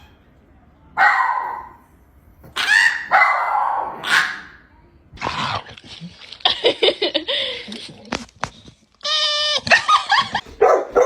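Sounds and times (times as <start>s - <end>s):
dog barking and yelping: 2.4s - 4.6s, 10.4s - 11.0s.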